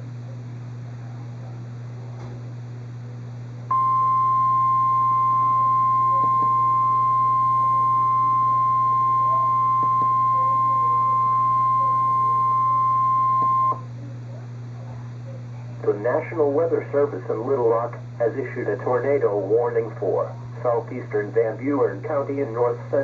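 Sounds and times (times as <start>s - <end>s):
radio hum and hiss: 0.0s - 23.0s
steady high alarm tone: 3.7s - 13.8s.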